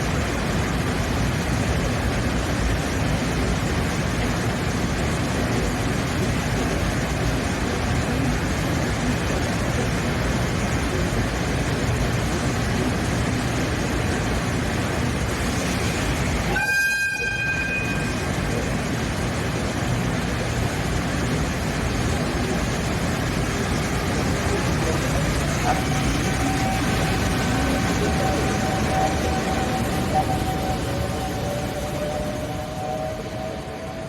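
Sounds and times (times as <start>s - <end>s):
train running: 0.0s - 34.0s
train horn toot: 16.5s - 18.2s.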